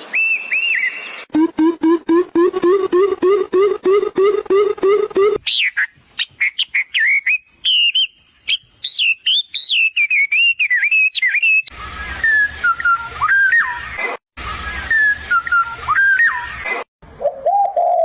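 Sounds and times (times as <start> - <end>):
bird chirps and whistles: 0.0 - 16.6
low sliding whistled notes: 10.2 - 16.6.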